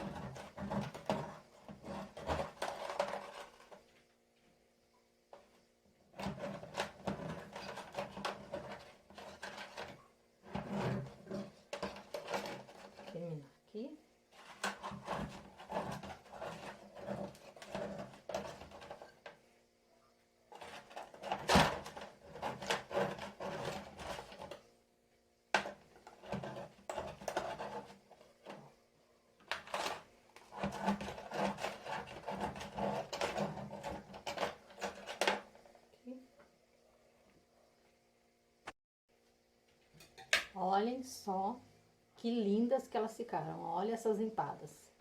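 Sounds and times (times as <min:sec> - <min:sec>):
scraping and clattering of baking tins: 0:00.0 - 0:03.9, 0:06.1 - 0:13.4, 0:14.3 - 0:19.4, 0:20.5 - 0:24.7, 0:25.6 - 0:28.8, 0:29.4 - 0:35.8.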